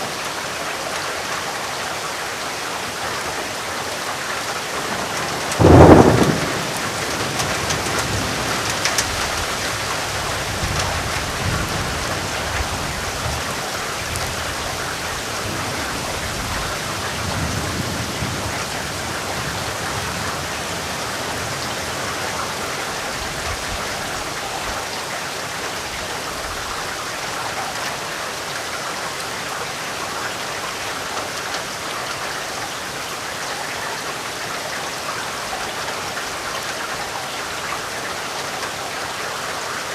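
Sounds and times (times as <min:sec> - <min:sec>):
steady rain falling: 0:00.0 - 0:39.9
thunder rumbling: 0:04.8 - 0:22.2
thunder clap: 0:04.9 - 0:12.8.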